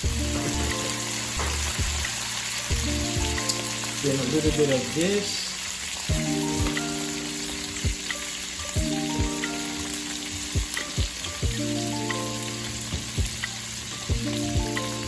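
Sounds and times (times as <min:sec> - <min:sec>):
sausage sizzling in a pan: 0:00.0 - 0:15.0.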